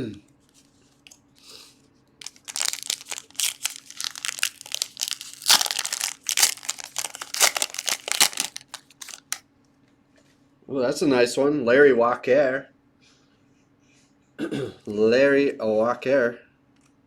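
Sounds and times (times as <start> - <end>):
plastic wrapper crinkling and tearing: 2.2 - 9.4.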